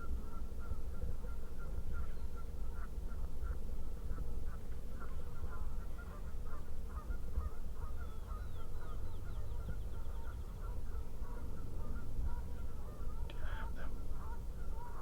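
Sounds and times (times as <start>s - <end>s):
songbird trill: 0.0s - 15.0s
turkey yelping: 5.4s - 15.0s.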